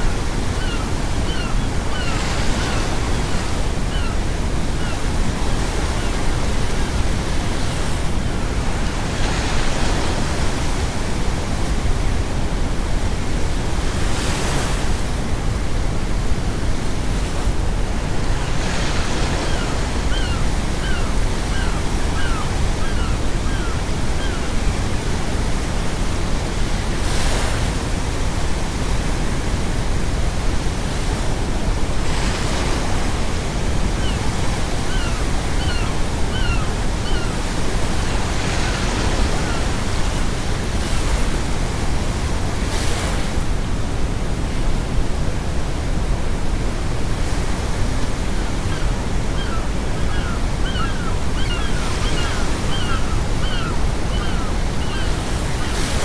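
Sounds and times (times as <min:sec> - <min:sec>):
seagulls calling: 0:00.0 - 0:04.2, 0:18.2 - 0:25.2, 0:33.6 - 0:40.2, 0:48.2 - 0:56.0
ocean waves breaking: 0:30.1 - 0:43.6, 0:46.8 - 0:56.0.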